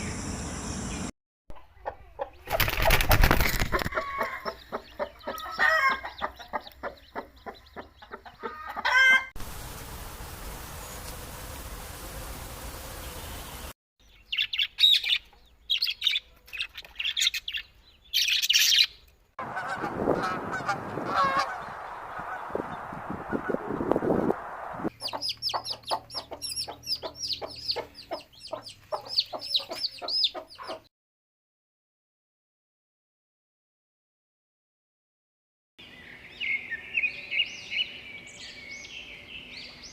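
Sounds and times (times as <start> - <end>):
high bird chirping: 13.1 - 19.0, 24.9 - 30.8
bird honking calls: 19.4 - 22.5.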